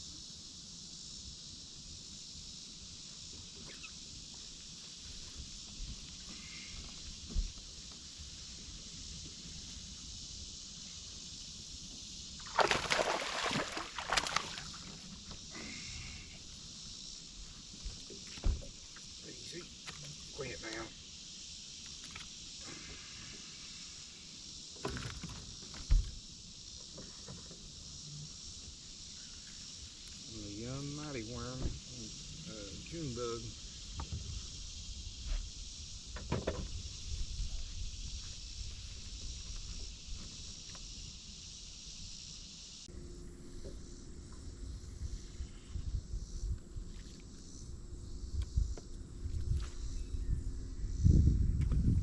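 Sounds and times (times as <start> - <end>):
insects buzzing: 0.0 - 52.0
dull thump: 17.8 - 18.9, 36.1 - 36.8
wind rumble on microphone: 33.9 - 40.4, 44.7 - 52.0
steady low hum: 42.6 - 52.0.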